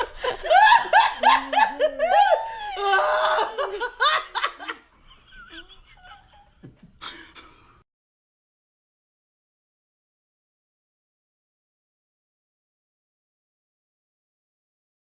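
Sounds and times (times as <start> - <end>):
woman laughing: 0.0 - 7.6.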